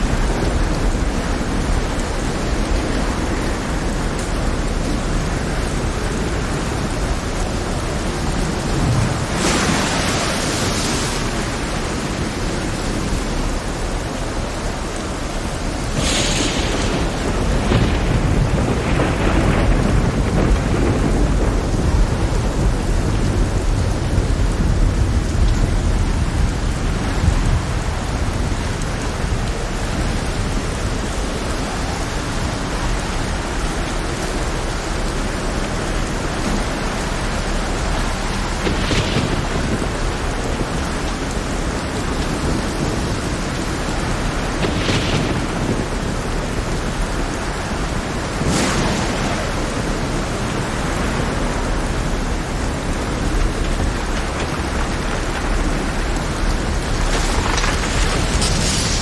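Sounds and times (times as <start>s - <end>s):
heavy rain: 0.0s - 59.0s
thunder rumbling: 0.0s - 59.0s.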